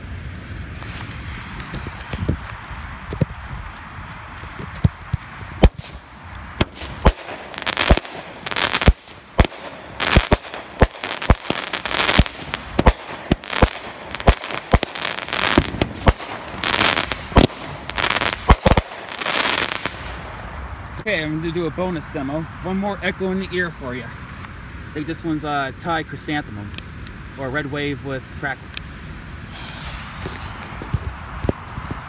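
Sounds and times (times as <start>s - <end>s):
fireworks crackling: 0.0s - 22.0s, 29.4s - 31.8s
fireworks bangs: 4.6s - 20.6s.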